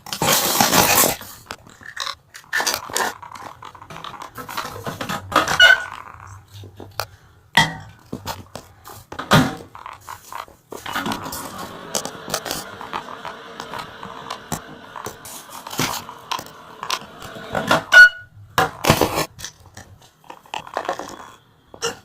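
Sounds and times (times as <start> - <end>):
microwave oven humming: 10.9 - 18.4.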